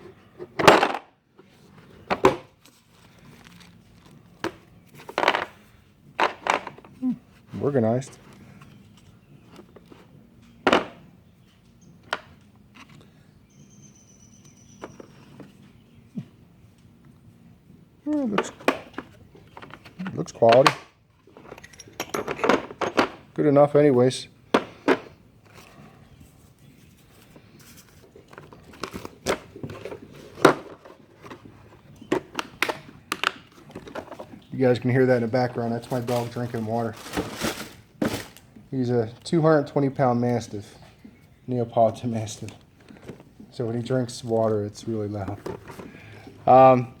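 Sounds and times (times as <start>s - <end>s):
tools knocking and clicking: 21.4s - 23.2s.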